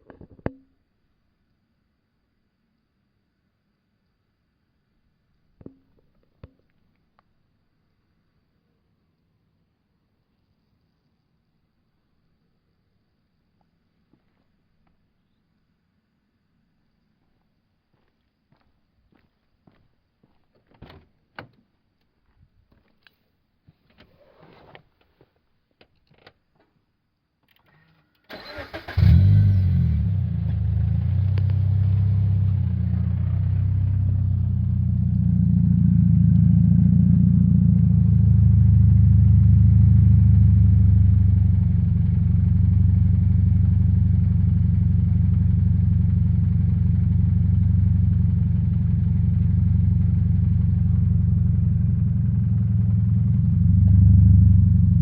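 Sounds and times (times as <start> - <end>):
car engine starting and idling: 28.3 - 55.0.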